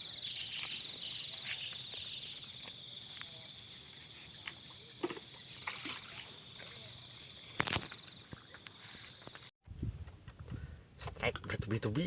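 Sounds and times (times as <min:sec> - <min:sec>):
insects trilling: 0:00.0 - 0:09.5.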